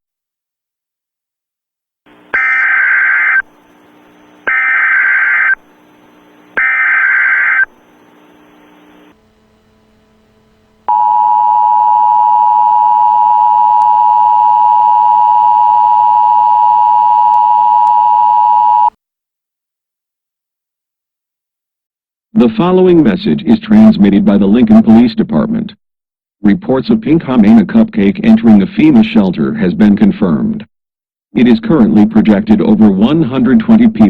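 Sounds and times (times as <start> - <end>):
digital data tone bursts: 2.3 - 3.6, 4.4 - 5.7, 6.5 - 9.0.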